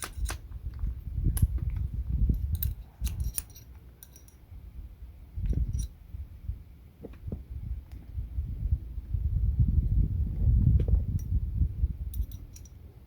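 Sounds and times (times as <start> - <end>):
screwdriver clicking on metal: 0.0 - 0.4, 2.4 - 4.4.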